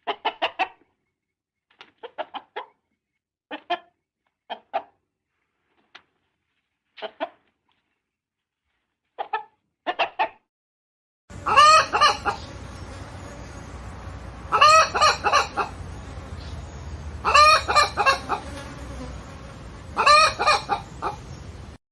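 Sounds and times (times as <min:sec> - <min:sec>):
hen calling: 0:11.3 - 0:12.9, 0:14.4 - 0:18.5, 0:20.0 - 0:21.4
steady background hiss: 0:11.4 - 0:21.8.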